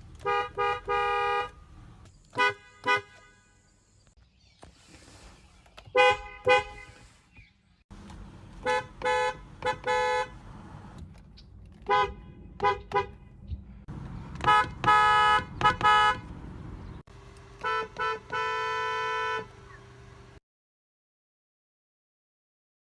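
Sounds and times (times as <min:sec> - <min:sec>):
car horns honking: 0:00.0 - 0:03.9, 0:05.9 - 0:07.2, 0:08.0 - 0:11.0, 0:11.7 - 0:20.4
road noise: 0:00.0 - 0:20.4.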